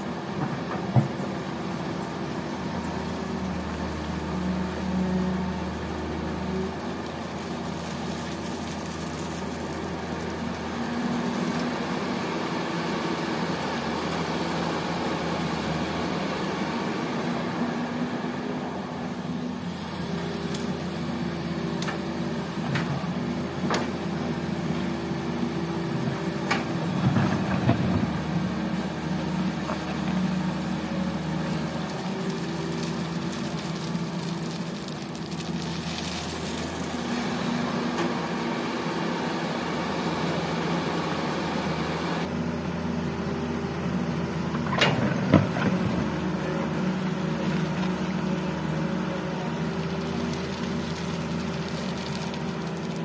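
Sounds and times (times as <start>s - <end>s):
diesel engines running: 0.0s - 53.0s.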